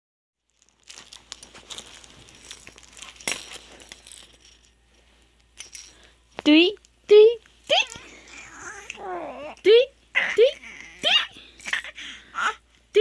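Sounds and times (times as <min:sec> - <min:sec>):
rustling and crinkling: 0:00.4 - 0:09.1.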